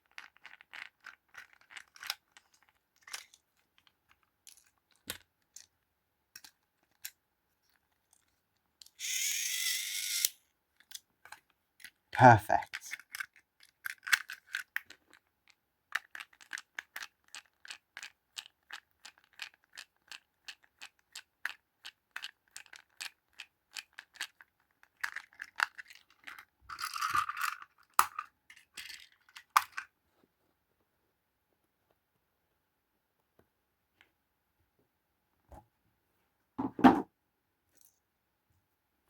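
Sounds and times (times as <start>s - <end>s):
rustling and handling noise: 0.0s - 9.0s, 23.8s - 38.8s
toy train plastic clicks: 8.1s - 29.9s.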